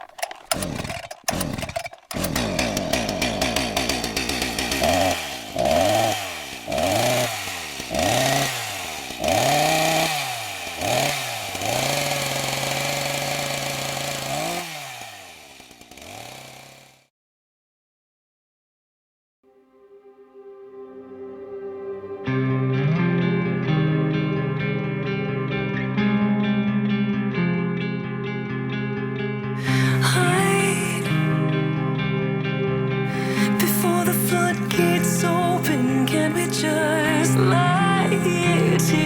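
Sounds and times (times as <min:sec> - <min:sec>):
chainsaw engine revving: 0:00.0 - 0:17.1, 0:33.1 - 0:39.0.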